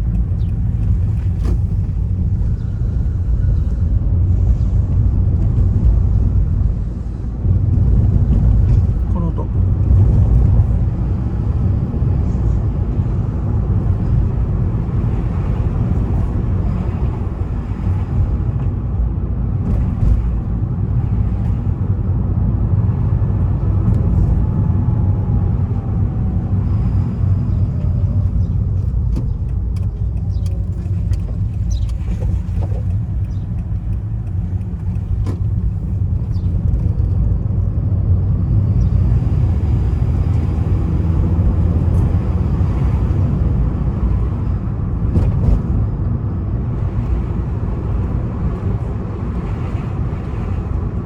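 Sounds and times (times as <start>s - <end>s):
car road and running noise: 0.0s - 51.0s.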